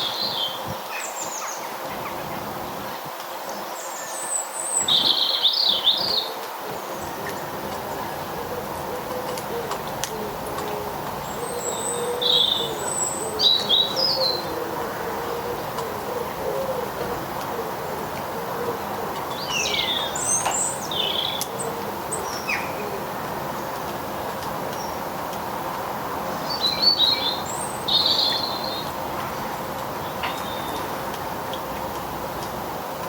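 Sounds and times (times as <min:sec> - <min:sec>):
small birds chirping: 0:00.0 - 0:16.4, 0:17.1 - 0:32.6
low cooing call: 0:06.0 - 0:23.6.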